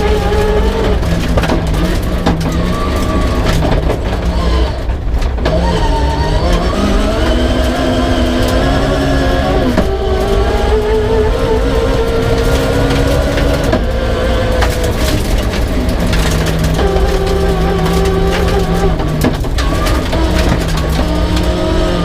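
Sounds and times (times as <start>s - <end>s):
car engine revving: 0.0s - 22.0s
clicks and knocks: 14.5s - 21.6s.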